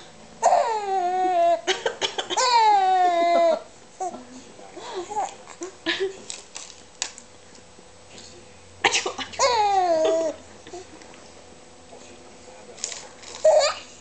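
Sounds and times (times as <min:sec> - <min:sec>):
woman coughing: 0:01.6 - 0:02.6, 0:08.8 - 0:10.2.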